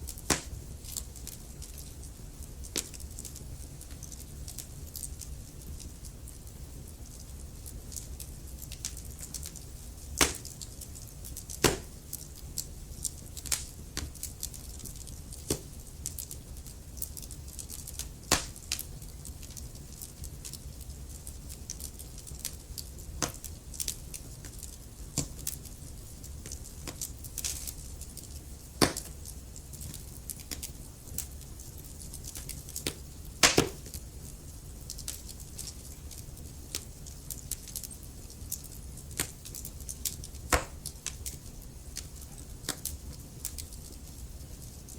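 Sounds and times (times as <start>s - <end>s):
wood fire crackling: 0.0s - 44.9s.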